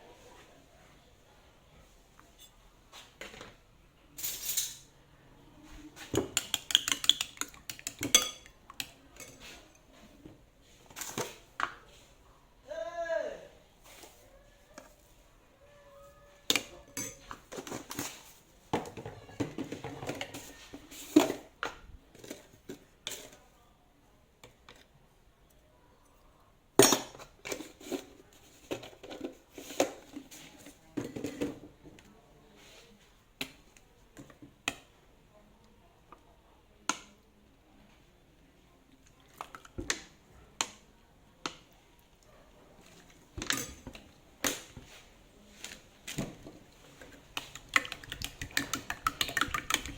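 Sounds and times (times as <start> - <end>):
kitchen utensils and dishes clinking: 4.2 - 4.9, 6.0 - 8.6, 9.2 - 10.1, 10.8 - 11.5, 16.5 - 21.5, 26.8 - 31.7, 42.9 - 45.0.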